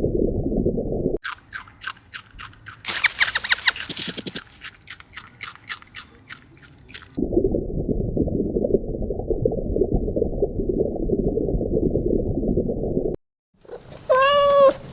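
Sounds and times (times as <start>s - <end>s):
animal high clicks and chirps: 1.5s - 7.2s.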